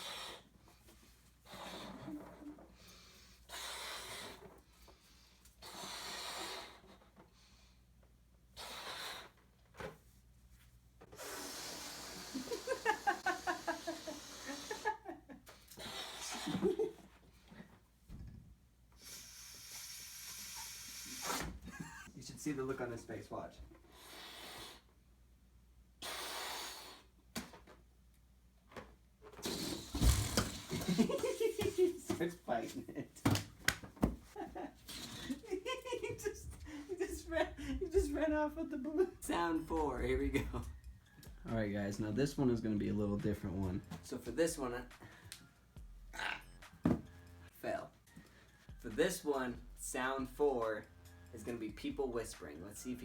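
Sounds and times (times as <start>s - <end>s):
breaths blowing up balloon: 0.0s - 7.6s, 8.5s - 9.9s, 11.0s - 17.0s, 19.0s - 22.1s, 23.8s - 25.0s, 26.0s - 27.3s, 29.3s - 31.9s, 34.0s - 38.0s
quiet inhales: 0.0s - 7.9s, 19.0s - 21.4s
balloon rubbing: 1.4s - 2.6s, 8.6s - 9.4s, 11.1s - 15.0s, 19.0s - 21.7s, 29.3s - 32.3s, 34.0s - 40.9s.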